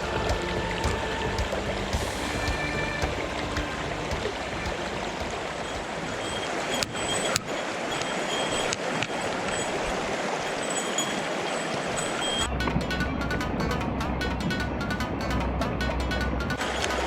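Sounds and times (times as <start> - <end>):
stream rushing over rocks: 0.0 - 12.5, 16.5 - 17.0.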